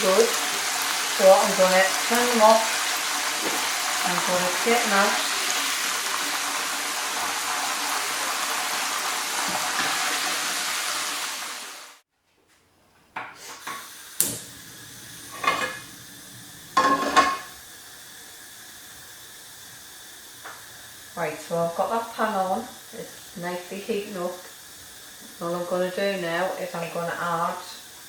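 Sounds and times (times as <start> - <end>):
loud steady hiss: 0.0 - 12.0, 13.5 - 28.0
pans and utensils clinking: 15.3 - 15.9, 16.8 - 17.5.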